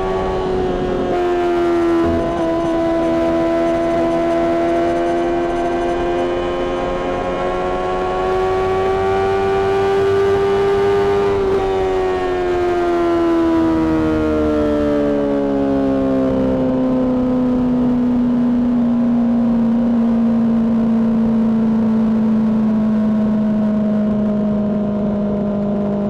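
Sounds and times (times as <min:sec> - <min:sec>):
motorcycle engine at high revs: 0:00.0 - 0:26.0.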